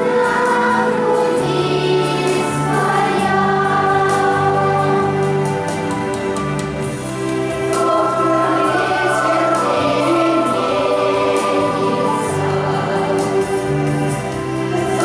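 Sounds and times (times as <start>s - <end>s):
choir singing: 0.0s - 6.3s, 7.0s - 15.0s
instrumental accompaniment: 0.0s - 15.0s.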